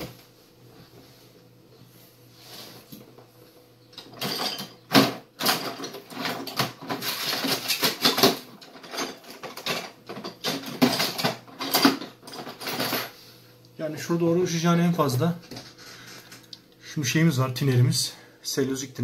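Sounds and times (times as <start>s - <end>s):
hard objects clattering on a workbench: 4.0s - 13.2s.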